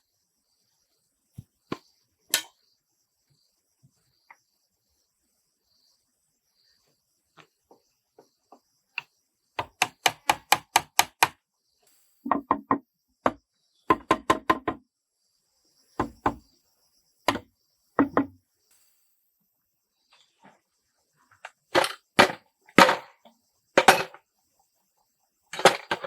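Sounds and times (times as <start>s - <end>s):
hand tool striking wood: 9.6s - 11.4s, 17.3s - 18.4s.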